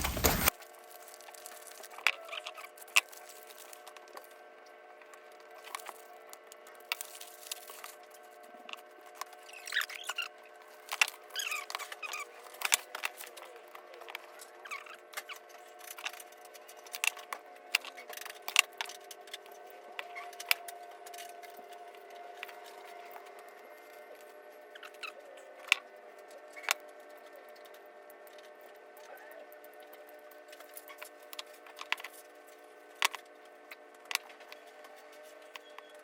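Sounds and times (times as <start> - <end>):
faint steady hum: 0.0 - 0.5.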